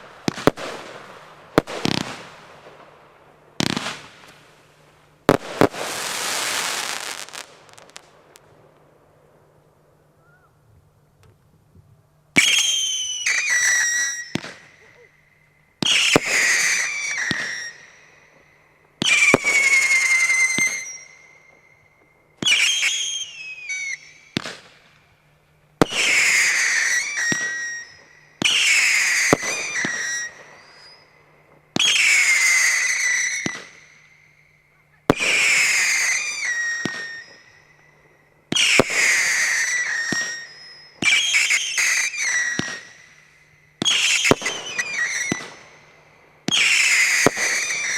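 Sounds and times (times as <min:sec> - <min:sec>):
firework shots with falling whistle: 0:05.3 - 0:08.3, 0:12.4 - 0:24.9, 0:25.8 - 0:47.9
hissing firework burst: 0:05.3 - 0:08.4.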